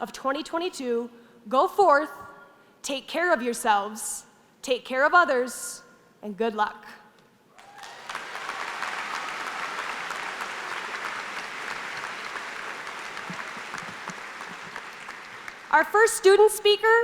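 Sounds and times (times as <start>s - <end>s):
audience applauding: 7.6s - 15.8s.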